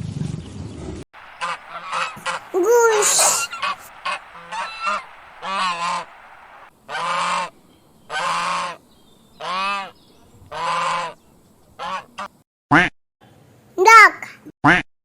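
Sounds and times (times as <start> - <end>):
goose honking: 1.2 - 7.5, 9.4 - 9.9, 10.5 - 11.2, 11.8 - 12.3.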